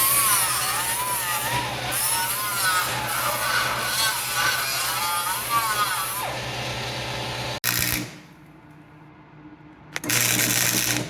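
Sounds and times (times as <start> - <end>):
electric power tool running: 5.4 - 7.6.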